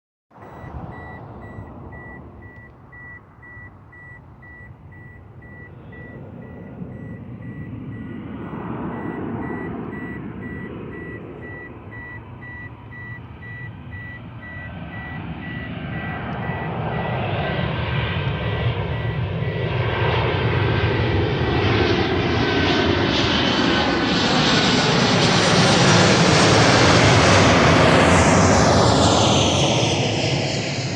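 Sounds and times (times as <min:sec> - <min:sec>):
faint high rapid beeping: 0:00.4 - 0:22.1
airplane engine on approach: 0:00.4 - 0:30.9.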